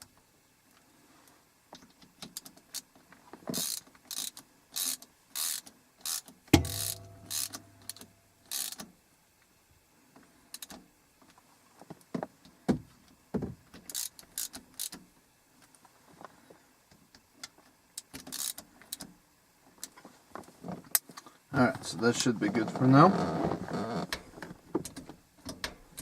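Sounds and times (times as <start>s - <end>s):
metal tools scraping and clicking: 5.4s - 8.8s
sharp metallic clank: 6.6s - 8.4s.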